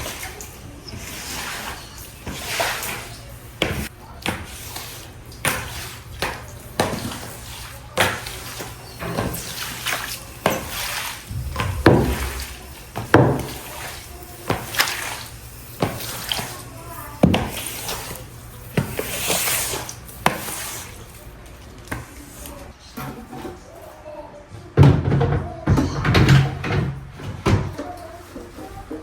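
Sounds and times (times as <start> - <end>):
water running at a sink: 0.0 - 22.2
dishes knocking and clattering: 11.3 - 13.8.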